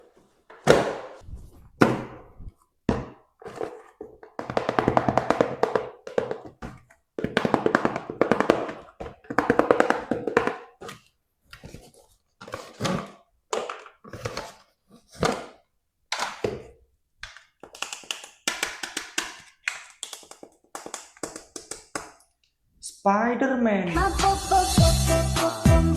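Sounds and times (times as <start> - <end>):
plastic packaging knocks and clacks: 1.8 - 14.6, 15.2 - 22.4.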